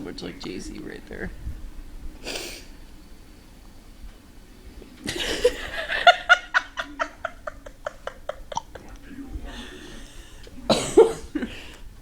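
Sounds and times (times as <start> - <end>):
person laughing: 5.1 - 9.0.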